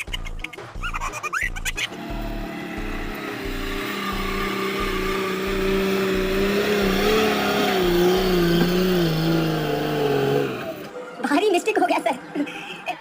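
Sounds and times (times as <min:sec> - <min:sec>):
vehicle engine straining: 0:01.8 - 0:11.0.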